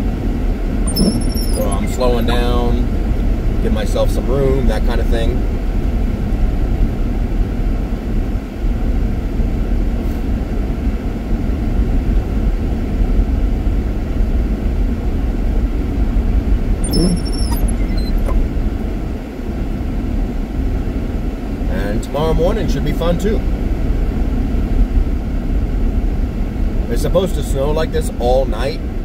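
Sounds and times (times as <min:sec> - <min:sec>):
faint high-pitched sound: 0:00.9 - 0:02.5, 0:16.8 - 0:18.4.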